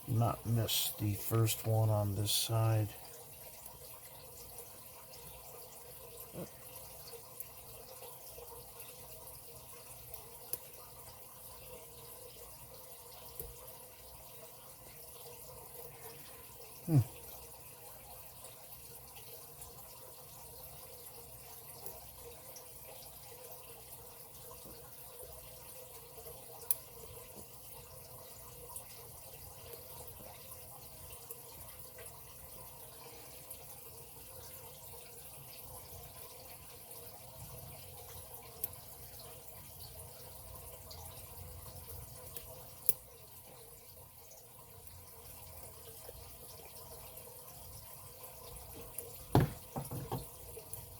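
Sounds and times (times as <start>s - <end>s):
faint steady hiss: 0.0s - 3.9s.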